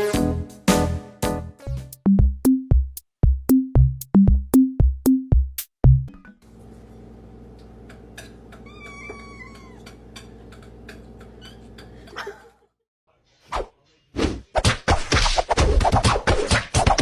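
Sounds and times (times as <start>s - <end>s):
cat meowing: 8.6s - 10.0s.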